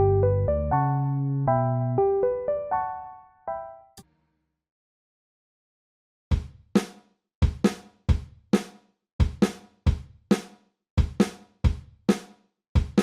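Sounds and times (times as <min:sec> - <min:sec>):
drum kit beat: 0:06.3 - 0:13.0.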